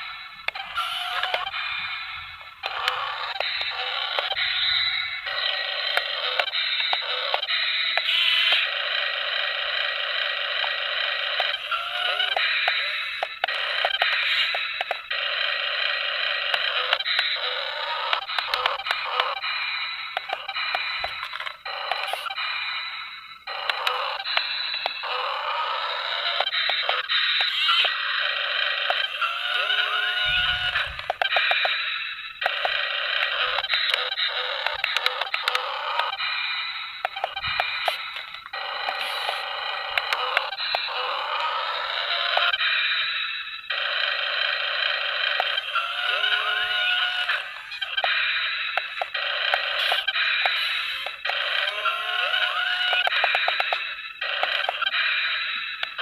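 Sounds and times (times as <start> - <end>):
small electric motors whirring: 0.0 - 56.0
scattered clicks: 0.4 - 1.8, 2.4 - 8.8, 10.4 - 22.6, 23.4 - 43.0, 43.7 - 56.0
rapid clicks: 43.7 - 56.0.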